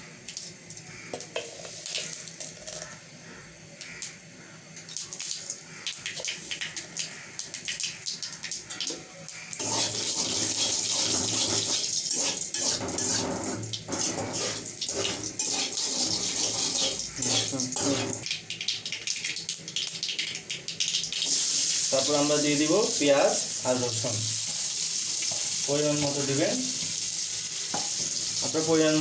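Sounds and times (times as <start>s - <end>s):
oil sizzling: 0.0s - 29.0s
seeds popping in hot oil: 0.2s - 3.0s, 3.8s - 4.2s, 4.8s - 22.3s.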